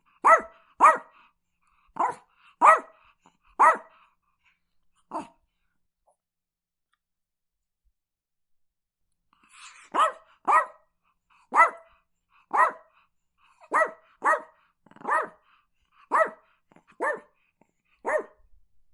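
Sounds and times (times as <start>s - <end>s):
dog barking: 0.1s - 1.2s, 2.0s - 4.0s, 9.7s - 17.4s, 18.0s - 18.4s.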